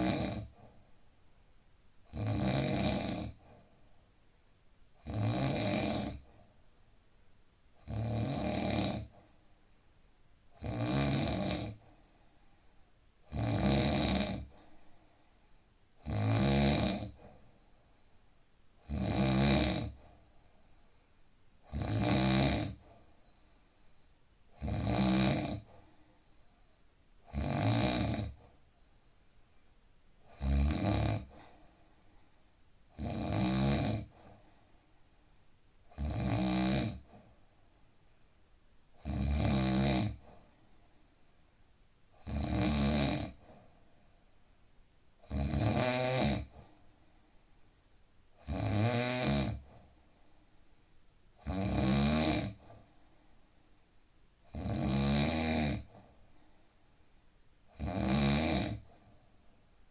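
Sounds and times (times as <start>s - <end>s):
man snoring: 0.0s - 0.6s, 2.1s - 3.5s, 5.0s - 6.3s, 7.8s - 9.2s, 10.6s - 11.9s, 13.3s - 14.6s, 16.0s - 17.3s, 18.8s - 20.0s, 21.6s - 22.8s, 24.6s - 25.8s, 27.2s - 28.4s, 30.3s - 31.4s, 33.0s - 34.2s, 35.9s - 37.2s, 39.0s - 40.3s, 42.2s - 43.5s, 45.2s - 46.6s, 48.4s - 49.7s, 51.4s - 52.7s, 54.5s - 56.0s, 57.7s - 58.9s
quiet breaths: 0.0s - 59.9s.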